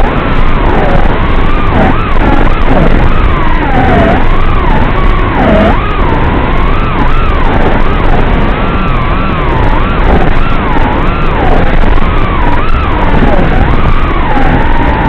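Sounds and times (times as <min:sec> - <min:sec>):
steady rumble of noise: 0:00.0 - 0:15.0
quadcopter motors whining: 0:00.7 - 0:08.2.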